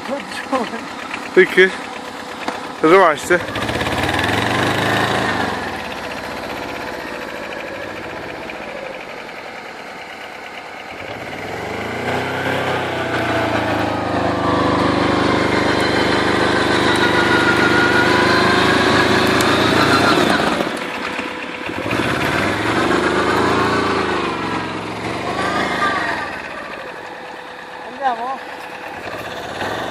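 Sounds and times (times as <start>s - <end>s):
quad engine revving: 0.0s - 29.9s.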